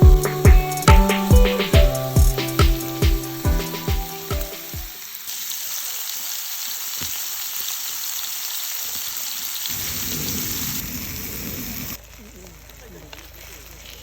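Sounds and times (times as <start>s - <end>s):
background music: 0.0s - 5.0s
food sizzling in a frying pan: 0.0s - 14.0s.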